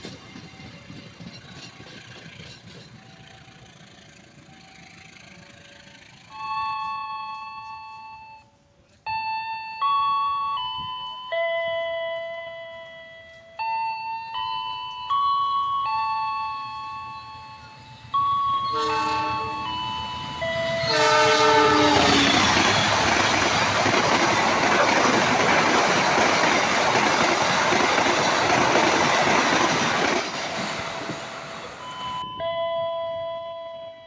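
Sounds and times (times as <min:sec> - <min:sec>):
train passing with loud rush: 0:00.0 - 0:08.9, 0:10.0 - 0:34.0
train horn blasts: 0:17.5 - 0:23.1.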